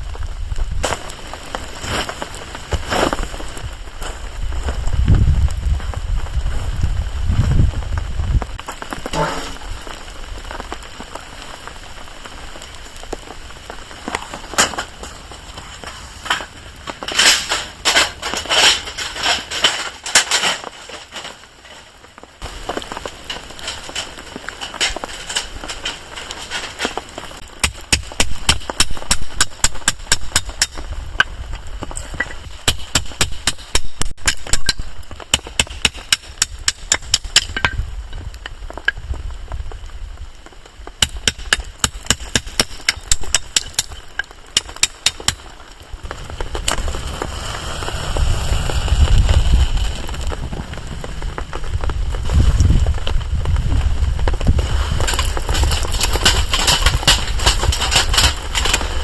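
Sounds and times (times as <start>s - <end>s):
bonfire crackling: 0.0s - 59.0s.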